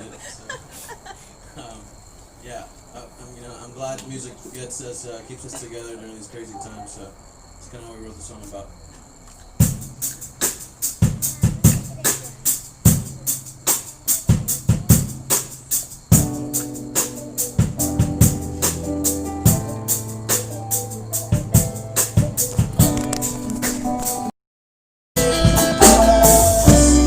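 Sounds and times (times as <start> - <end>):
low drum thumps: 9.6 - 23.0
drum and percussion beat: 9.6 - 24.3, 25.2 - 27.0
instruments holding chords: 14.4 - 24.3, 25.2 - 27.0.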